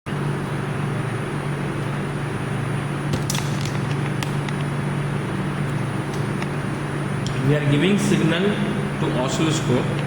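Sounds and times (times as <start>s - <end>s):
low electrical hum: 0.1s - 10.0s.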